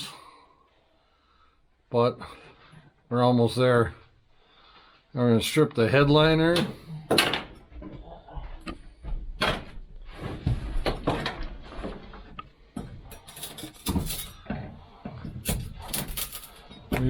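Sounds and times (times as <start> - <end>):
glass pieces clinking: 13.1 - 14.4.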